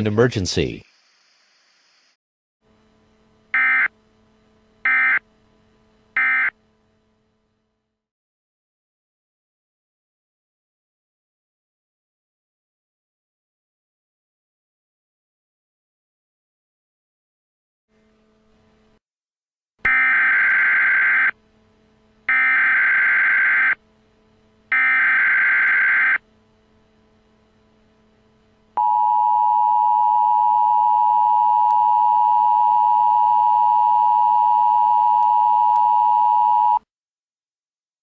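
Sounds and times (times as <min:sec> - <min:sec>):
steady attention tone: 0:02.7 - 0:07.6, 0:19.9 - 0:36.8.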